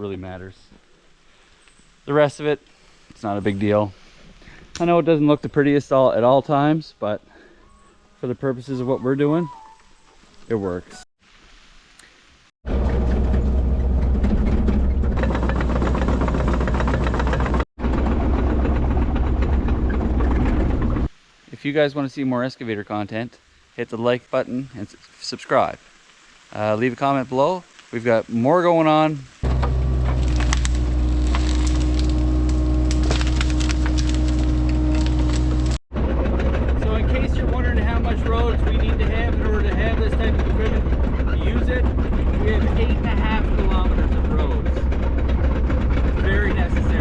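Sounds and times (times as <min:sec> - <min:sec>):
excavator diesel engine running: 0:12.7 - 0:21.1, 0:29.4 - 0:47.0
wood cracking and splintering: 0:29.4 - 0:37.9.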